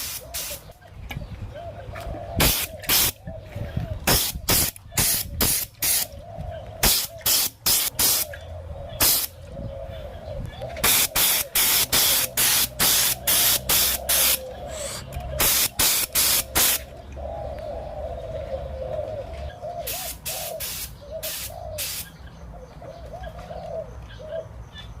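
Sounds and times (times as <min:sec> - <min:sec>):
spray paint bursts: 0:00.0 - 0:00.7, 0:02.4 - 0:03.2, 0:04.1 - 0:06.1, 0:06.8 - 0:08.3, 0:09.0 - 0:09.3, 0:10.8 - 0:16.9, 0:19.9 - 0:22.1
doves cooing: 0:00.0 - 0:25.0.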